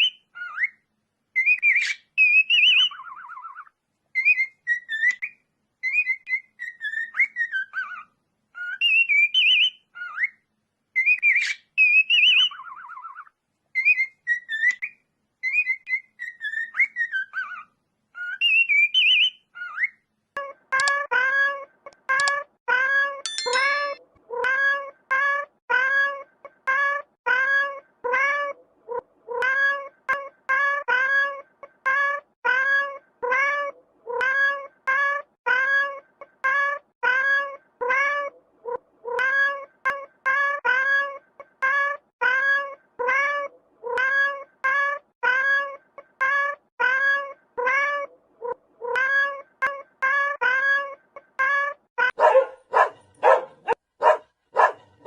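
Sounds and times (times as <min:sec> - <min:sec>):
dog barking: 0:52.2 - 0:55.0.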